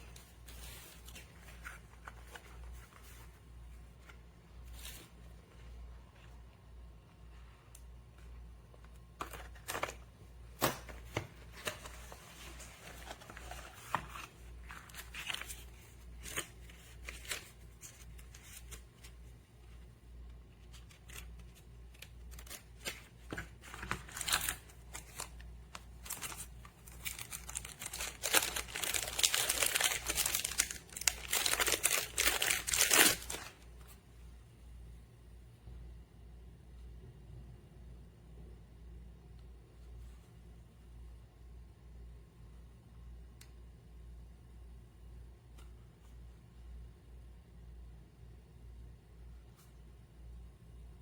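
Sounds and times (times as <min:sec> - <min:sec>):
rustling and crinkling handling: 0:00.0 - 0:34.2.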